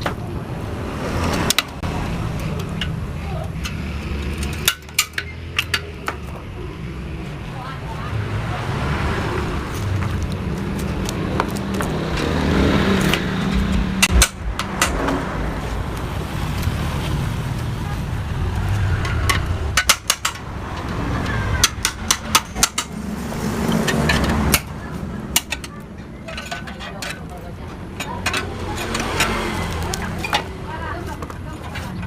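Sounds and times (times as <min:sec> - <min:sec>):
hand tools clinking on metal: 0:02.5 - 0:06.3, 0:19.0 - 0:23.0, 0:23.7 - 0:32.0
steady low rumble: 0:05.8 - 0:26.0.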